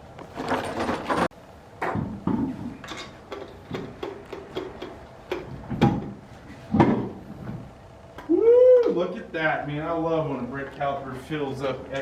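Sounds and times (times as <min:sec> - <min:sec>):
sharp clicks and knocks: 0:00.2 - 0:08.3.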